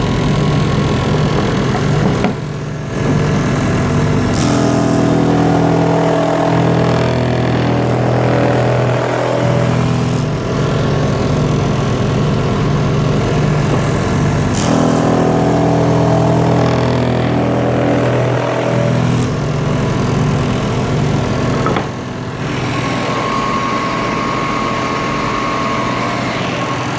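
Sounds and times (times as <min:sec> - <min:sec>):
electric motor humming: 0:00.0 - 0:26.9.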